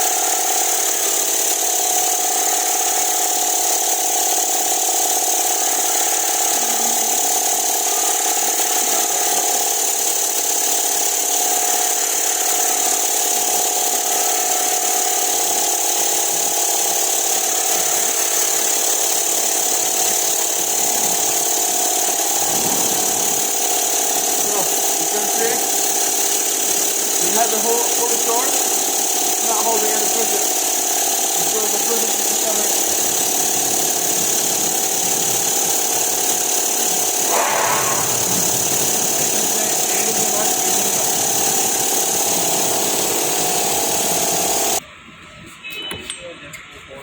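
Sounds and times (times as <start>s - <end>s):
machinery drone with hiss: 37.2s - 44.8s.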